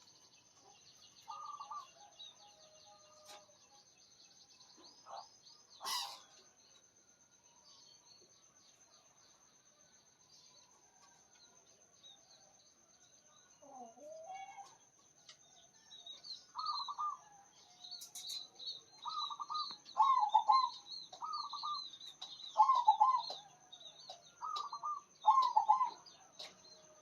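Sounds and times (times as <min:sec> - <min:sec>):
birds chirping: 0:00.0 - 0:03.2, 0:04.5 - 0:06.5, 0:16.4 - 0:27.0.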